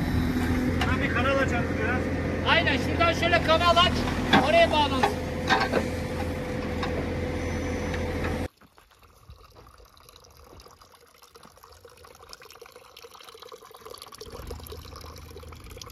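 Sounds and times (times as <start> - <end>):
engine humming: 0.0 - 8.5, 14.2 - 15.9
running water trickling: 8.4 - 15.9.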